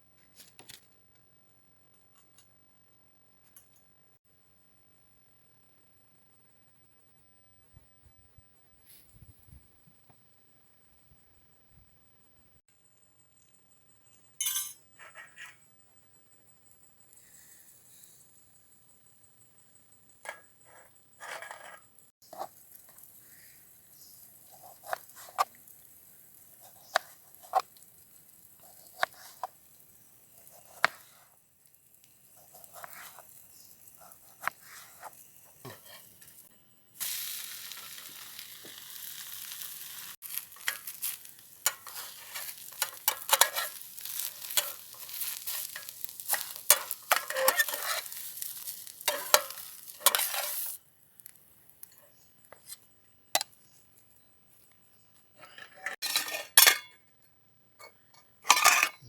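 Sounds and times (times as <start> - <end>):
food sizzling in hot oil: 22.2 - 52.8
stirring clatter: 40.5 - 48.2, 49.0 - 50.7.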